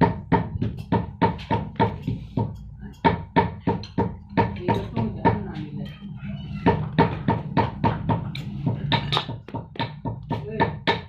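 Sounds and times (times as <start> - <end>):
background music: 2.1 - 11.0.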